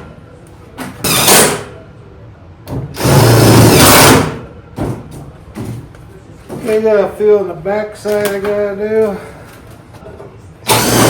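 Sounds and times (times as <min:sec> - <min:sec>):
power driver running: 0:10.7 - 0:11.0.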